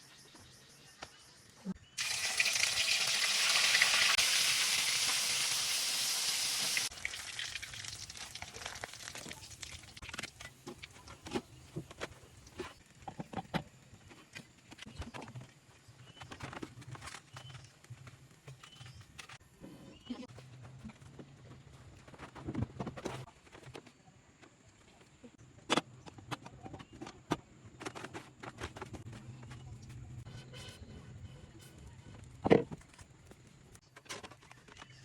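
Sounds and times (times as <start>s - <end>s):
water pouring: 2.0s - 10.0s.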